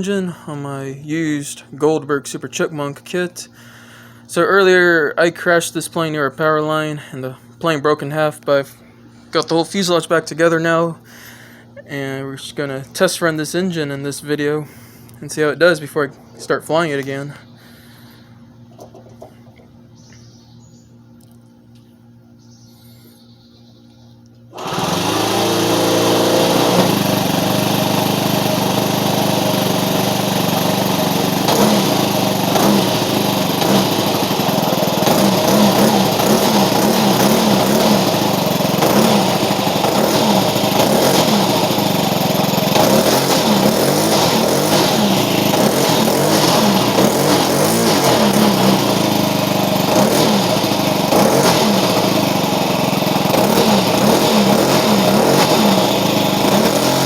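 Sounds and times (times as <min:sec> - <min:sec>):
model airplane engine running: 0:24.6 - 0:57.0.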